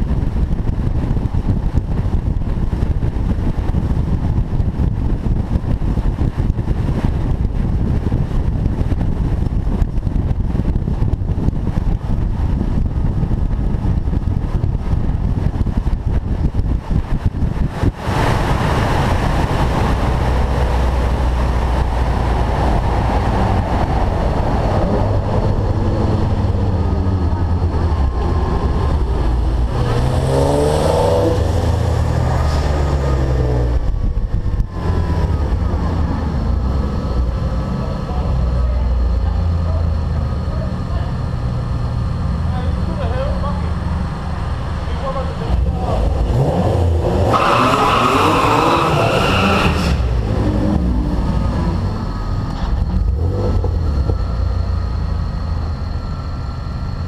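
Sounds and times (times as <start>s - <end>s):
wind and road noise: 0.0s - 57.0s
sports car engine accelerating: 18.1s - 57.0s.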